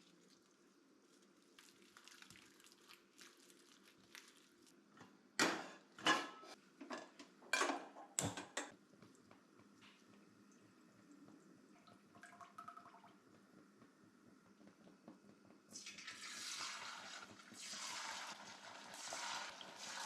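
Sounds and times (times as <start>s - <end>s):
kitchen utensils and dishes clattering: 5.4s - 8.7s.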